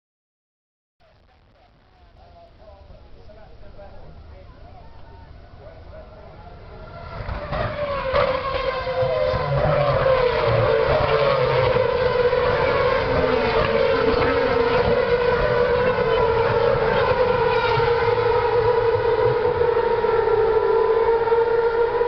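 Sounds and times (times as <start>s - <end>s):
race car engine screaming: 6.2s - 22.0s.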